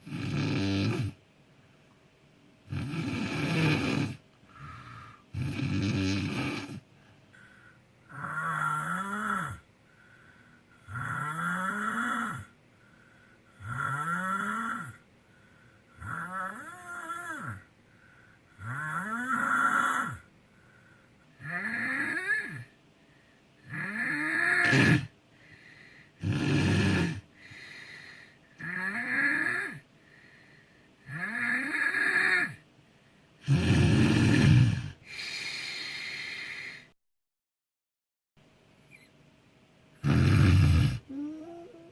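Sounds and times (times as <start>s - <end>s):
person snoring: 0.0s - 1.2s, 2.7s - 6.8s, 8.1s - 9.6s, 10.8s - 12.6s, 13.6s - 15.0s, 16.0s - 17.7s, 18.6s - 20.3s, 21.4s - 22.7s, 23.6s - 25.1s, 26.2s - 29.8s, 31.0s - 32.6s, 33.4s - 36.9s, 40.0s - 41.9s.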